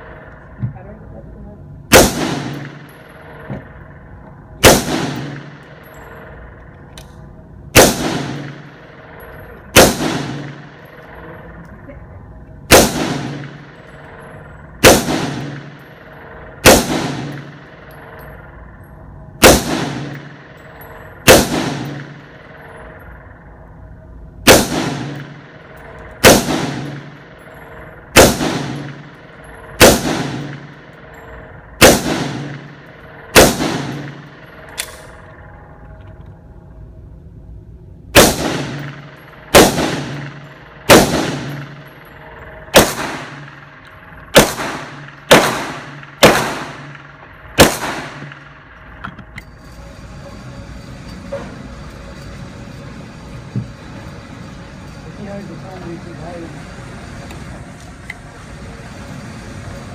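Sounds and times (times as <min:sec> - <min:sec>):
gunshots with ringing echo: 0:00.0 - 0:36.0, 0:38.1 - 0:49.0.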